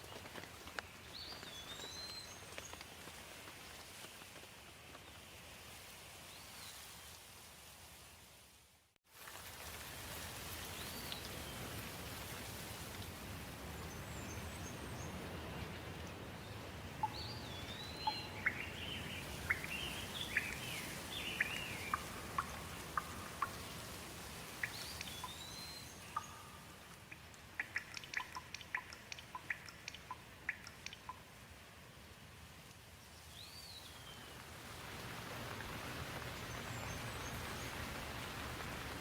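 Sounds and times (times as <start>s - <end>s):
steady rain: 0.0s - 39.0s
water drips ticking: 17.0s - 31.4s.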